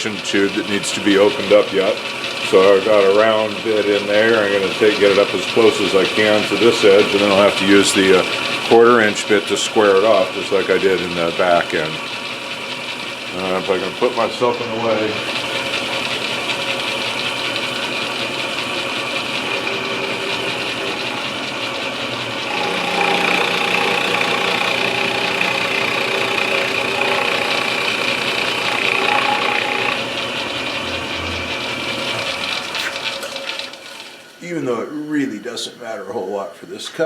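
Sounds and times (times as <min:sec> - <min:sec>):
milling machine cutting wood: 0:00.0 - 0:34.2.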